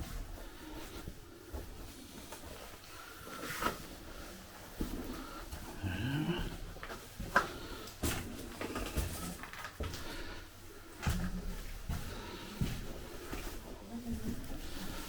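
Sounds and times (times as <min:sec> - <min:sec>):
footsteps in a tunnel: 0:00.0 - 0:15.0.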